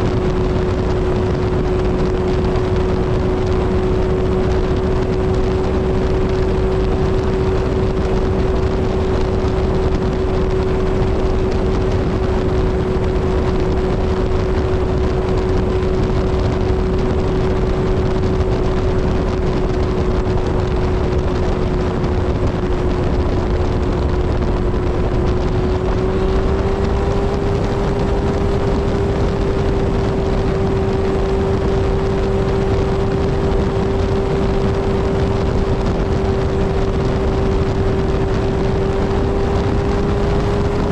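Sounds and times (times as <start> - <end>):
motorcycle engine cruising: 0.0 - 40.9
wind rushing: 0.0 - 40.9.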